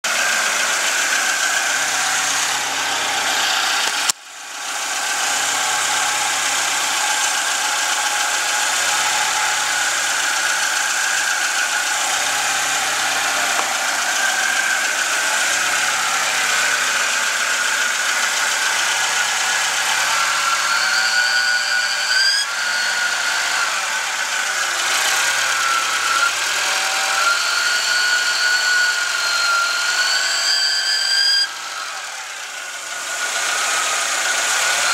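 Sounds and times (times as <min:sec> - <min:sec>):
car engine running: 0:00.0 - 0:30.0, 0:31.4 - 0:34.9
higher wavering whine: 0:04.8 - 0:22.6.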